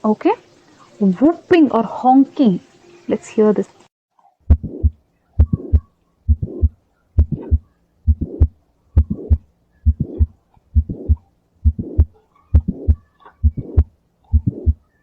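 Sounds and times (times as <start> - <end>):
heartbeat: 4.5 - 15.0
high-pitched heart murmur: 4.5 - 15.0.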